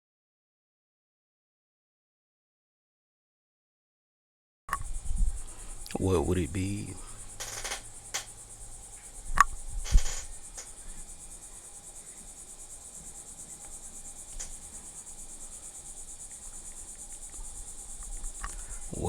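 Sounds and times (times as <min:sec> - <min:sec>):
crickets chirping: 0:04.7 - 0:19.0.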